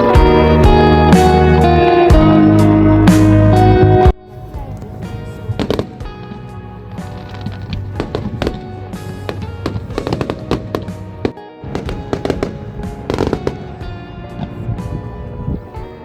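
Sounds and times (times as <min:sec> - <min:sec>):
background music: 0:00.0 - 0:16.0
fireworks bursting and crackling: 0:04.6 - 0:16.0.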